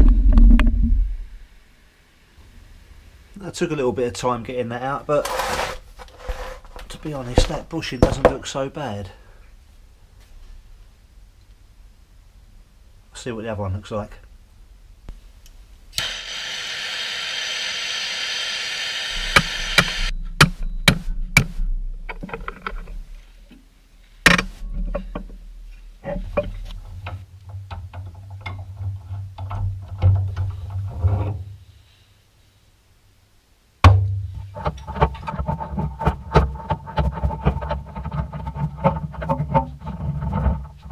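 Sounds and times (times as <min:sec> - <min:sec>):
low hum: 0:00.0 - 0:03.4, 0:19.1 - 0:27.4
steady hiss: 0:01.0 - 0:27.5, 0:30.4 - 0:34.8
metal clicks and knocks: 0:06.8 - 0:08.5, 0:20.3 - 0:23.6, 0:24.3 - 0:25.4, 0:26.2 - 0:30.8
loud strike on metal: 0:19.1 - 0:21.8.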